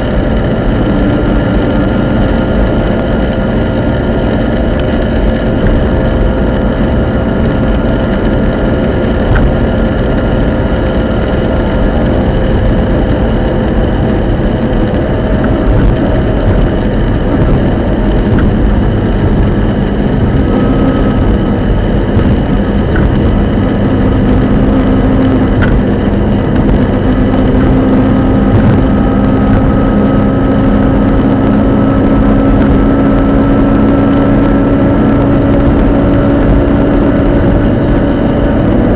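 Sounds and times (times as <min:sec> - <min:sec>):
drivetrain and road noise: 0:00.0 - 0:38.9
humming whine: 0:00.0 - 0:38.9.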